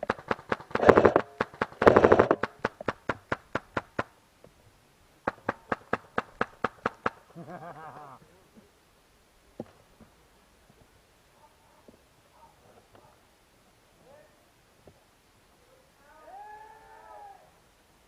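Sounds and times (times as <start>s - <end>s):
loud rasping bursts: 0.0s - 4.0s
fast run of sharp knocks: 0.0s - 4.1s, 5.3s - 7.2s.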